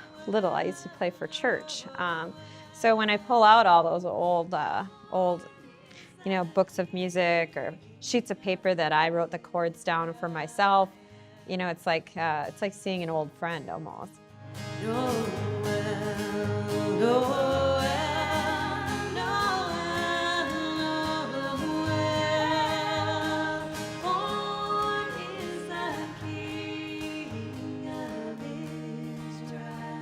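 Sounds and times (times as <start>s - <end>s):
singing over instrumental backing: 0.0s - 7.6s, 14.7s - 30.0s.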